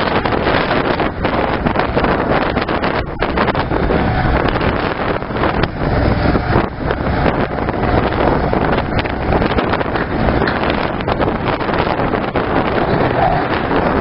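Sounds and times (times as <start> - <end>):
excavator diesel engine running: 0.0 - 14.0
wind buffeting microphone: 0.0 - 14.0.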